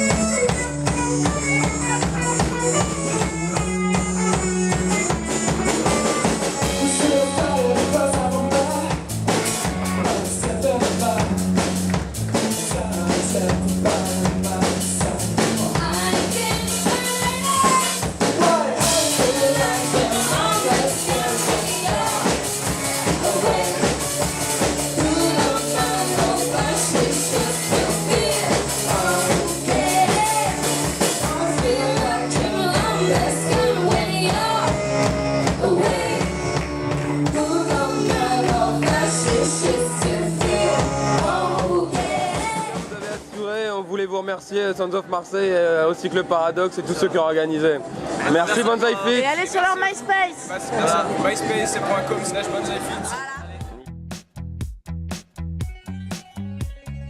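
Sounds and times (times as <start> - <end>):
rock band playing: 0.0 - 43.9, 47.9 - 57.0
person singing: 4.7 - 11.5, 12.4 - 36.6, 37.2 - 43.1.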